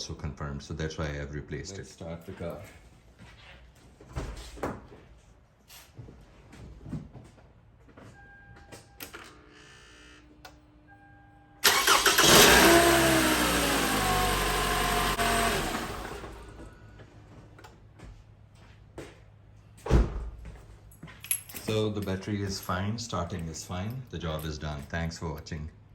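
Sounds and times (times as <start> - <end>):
car engine cranking and revving: 11.6 - 16.8.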